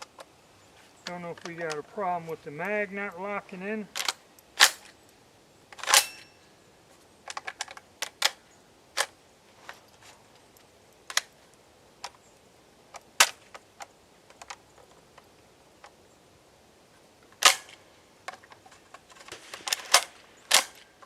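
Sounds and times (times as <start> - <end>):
metallic clicks of shotgun handling: 4.0 - 5.0.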